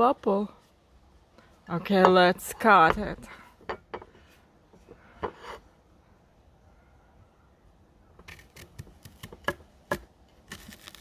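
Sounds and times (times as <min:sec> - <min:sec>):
knife cutting pear with cracks: 0:08.2 - 0:11.0.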